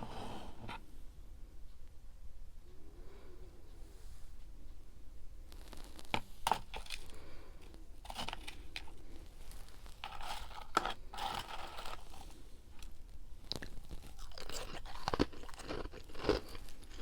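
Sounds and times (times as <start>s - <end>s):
crinkly crackling rustles: 5.5s - 17.0s.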